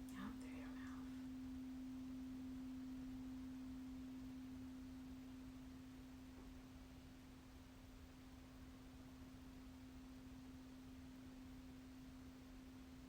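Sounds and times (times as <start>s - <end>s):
singing bowl ringing: 0.0s - 6.8s.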